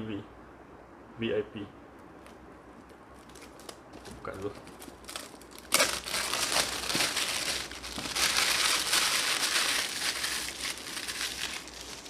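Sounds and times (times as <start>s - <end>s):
plastic packaging crinkling and tearing: 3.2s - 12.0s.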